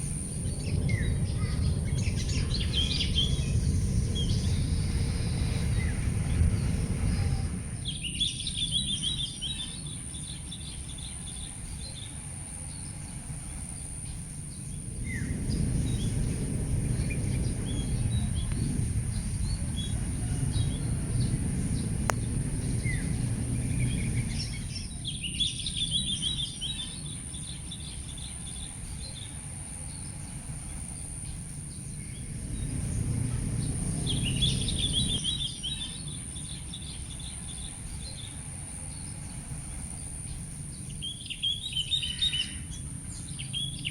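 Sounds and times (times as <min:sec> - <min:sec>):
low rumble: 0:00.0 - 0:43.9
small birds chattering: 0:00.0 - 0:43.9.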